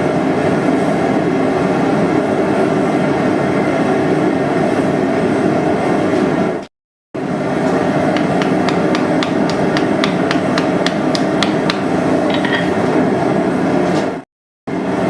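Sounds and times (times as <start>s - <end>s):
forge burner roaring: 0.0s - 15.0s
hammer blows on hot steel: 8.1s - 12.8s.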